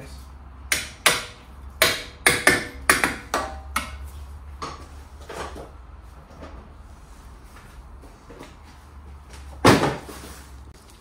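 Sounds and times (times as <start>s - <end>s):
hammer striking metal: 0.7s - 4.0s.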